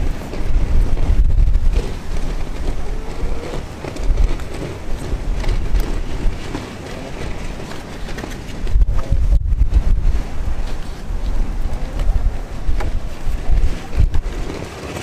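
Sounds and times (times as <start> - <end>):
gusty wind buffeting microphone: 0.0 - 15.0.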